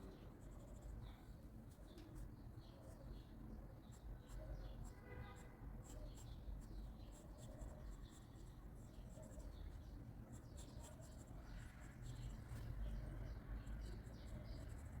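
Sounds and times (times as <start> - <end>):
pencil scratching on paper: 0.4 - 1.0, 7.0 - 9.5, 10.3 - 13.0, 13.6 - 15.0.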